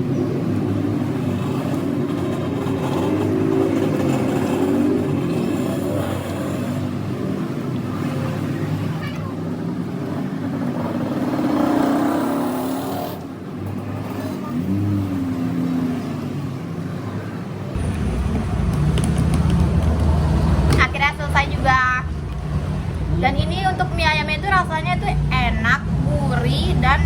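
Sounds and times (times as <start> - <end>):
vehicles passing by: 0.0 - 27.0
heavy low rumble: 17.8 - 27.0.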